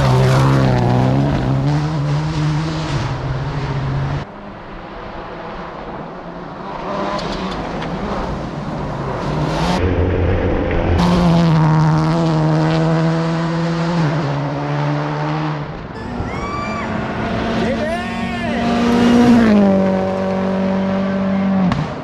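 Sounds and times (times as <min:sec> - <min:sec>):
rally car engines revving: 0:00.0 - 0:22.0.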